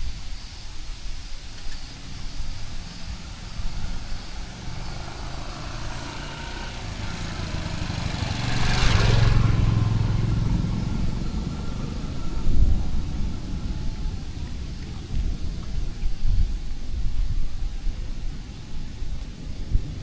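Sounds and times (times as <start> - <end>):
tyre hiss on wet road: 0.0 - 12.2
vehicle engine passing by: 2.0 - 16.1.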